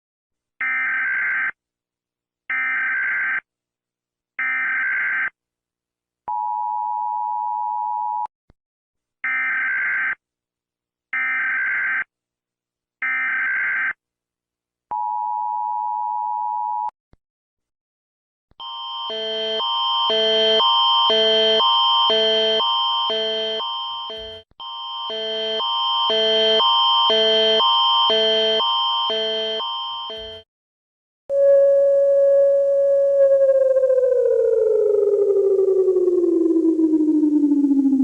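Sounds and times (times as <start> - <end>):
two-tone attention signal: 19.1 - 24.4, 25.1 - 30.4.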